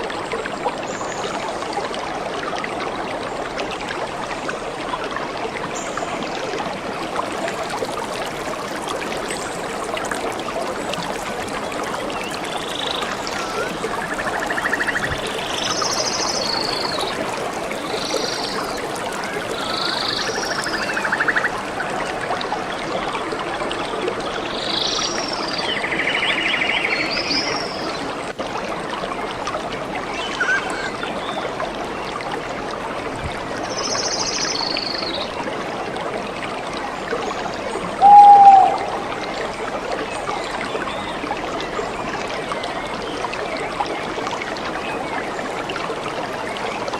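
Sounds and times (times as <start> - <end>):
stream flowing and trickling: 0.0 - 46.9
short bird calls: 38.0 - 39.3.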